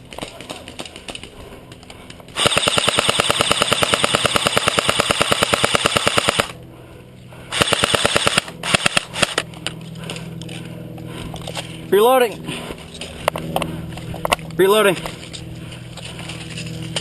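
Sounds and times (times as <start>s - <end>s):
airsoft gun firing: 2.4s - 6.6s, 7.5s - 9.4s.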